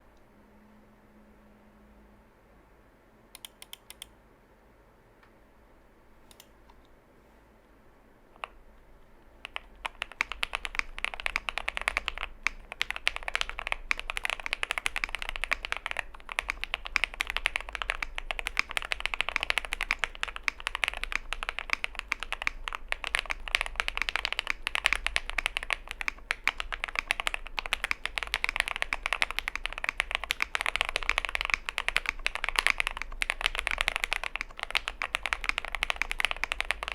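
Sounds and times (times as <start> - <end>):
mechanical keyboard typing: 9.4 - 36.9.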